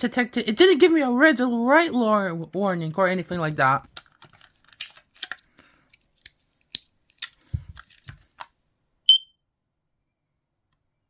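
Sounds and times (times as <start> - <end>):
high-pitched smoke alarm beep: 9.1 - 9.4.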